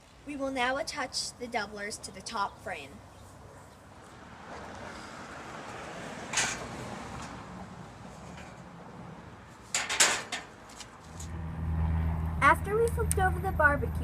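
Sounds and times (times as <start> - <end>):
steel parts knocking and clanking: 6.3 - 7.3, 9.7 - 10.6.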